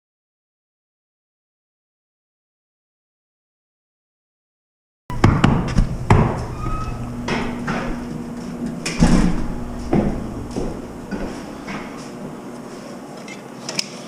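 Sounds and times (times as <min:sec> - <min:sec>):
faint low hum: 0:05.1 - 0:12.4
sharp knocks and clatters: 0:05.2 - 0:08.1, 0:08.7 - 0:12.0.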